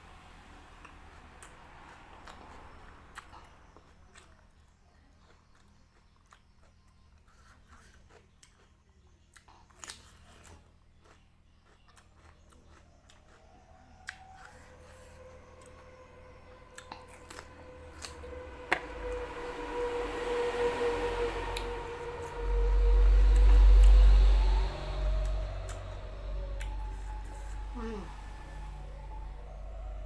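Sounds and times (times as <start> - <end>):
faint steady hum: 0.0 - 30.0
close chewing and biting: 1.4 - 16.0, 16.7 - 19.4.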